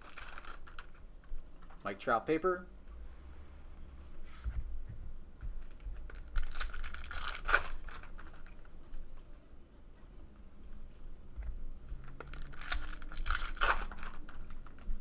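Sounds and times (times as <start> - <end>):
foil wrapper tearing and crinkling: 0.0 - 1.0, 6.1 - 8.7, 12.2 - 14.9.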